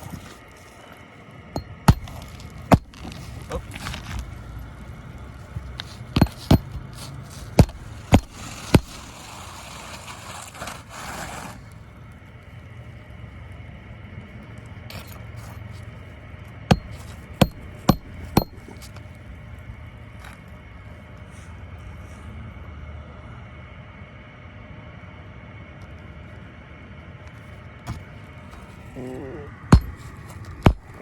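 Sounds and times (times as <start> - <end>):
low steady rumble: 0.0 - 31.0
hammer striking: 1.6 - 3.2, 5.6 - 9.0, 16.7 - 18.9, 29.7 - 31.0
light scrape: 5.4 - 11.8.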